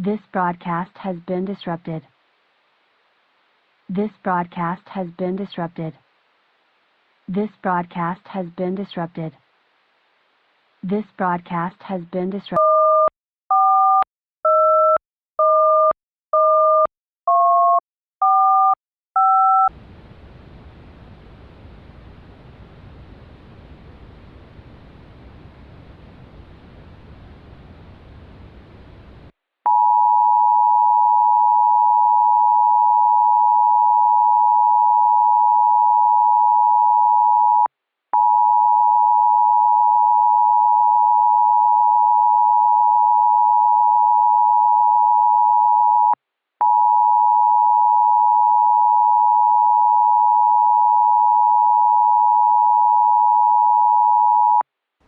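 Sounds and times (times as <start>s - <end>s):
static hiss: 2.1s - 4.1s, 6.0s - 7.3s, 19.8s - 29.3s.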